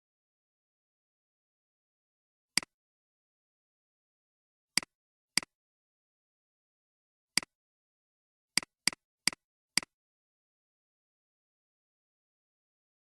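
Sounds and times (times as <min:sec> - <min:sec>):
computer mouse clicking: 0:08.6 - 0:10.0.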